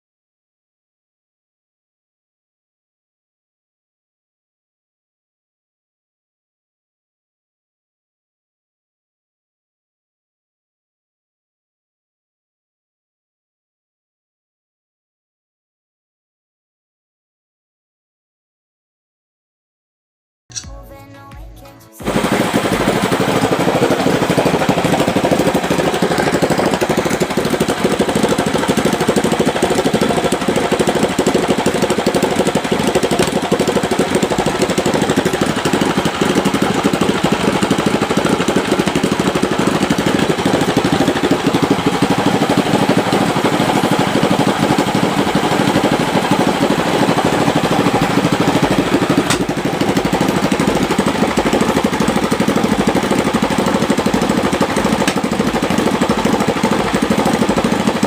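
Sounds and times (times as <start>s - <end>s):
boat engine running loudly: 22.0s - 58.0s.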